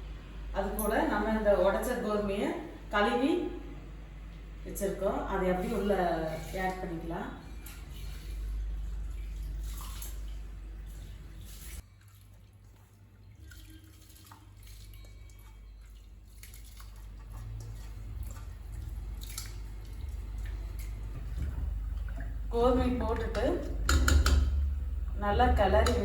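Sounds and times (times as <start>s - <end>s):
steady low hum: 0.0s - 11.8s, 17.0s - 26.0s
water drips and splashes: 6.3s - 25.2s.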